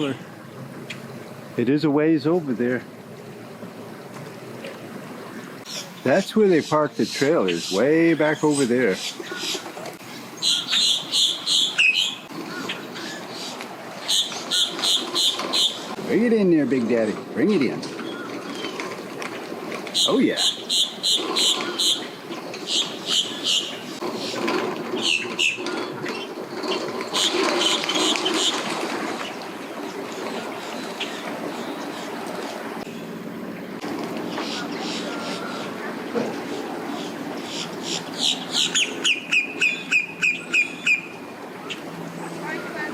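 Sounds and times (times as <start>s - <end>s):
boat motor running: 0.0s - 42.9s
water noise: 0.0s - 42.9s
bird calling high notes: 5.3s - 16.0s, 20.0s - 29.4s, 32.9s - 36.1s, 36.9s - 42.9s.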